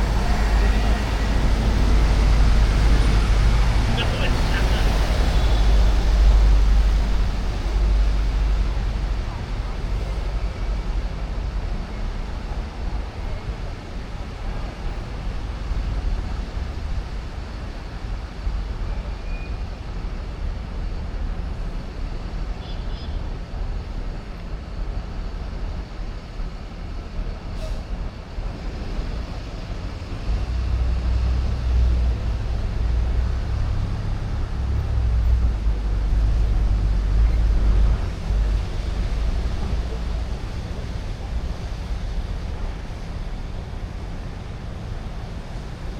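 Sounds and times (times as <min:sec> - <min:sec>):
traffic hum: 0:00.0 - 0:19.0, 0:19.8 - 0:45.9
heavy vehicle rumble: 0:00.0 - 0:45.9.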